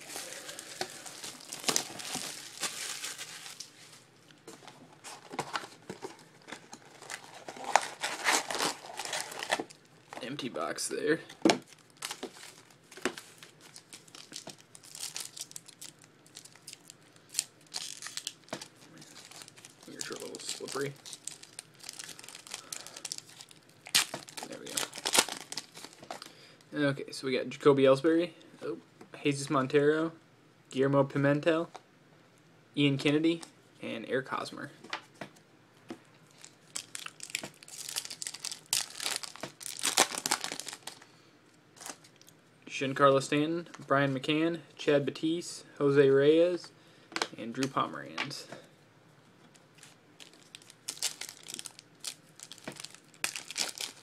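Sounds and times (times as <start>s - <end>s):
wrapper crinkling and crackling: 0.0s - 4.5s, 5.1s - 10.5s, 11.6s - 26.3s, 36.3s - 41.1s, 41.8s - 42.4s, 49.7s - 54.0s
wrapper snapping: 11.7s - 26.3s, 36.4s - 41.0s, 49.8s - 54.0s.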